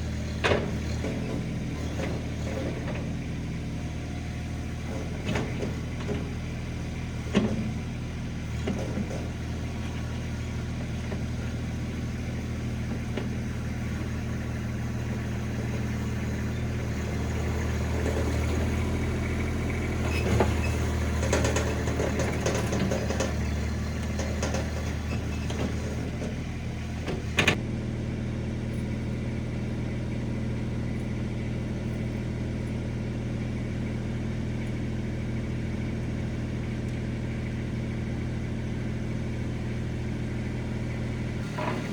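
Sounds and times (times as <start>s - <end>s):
skid steer engine running: 0.0s - 41.9s
rattling and scraping: 19.9s - 27.6s.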